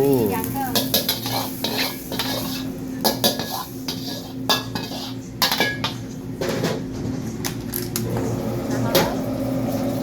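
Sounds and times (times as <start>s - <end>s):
metal spatula clanking against pan: 0.7s - 6.0s.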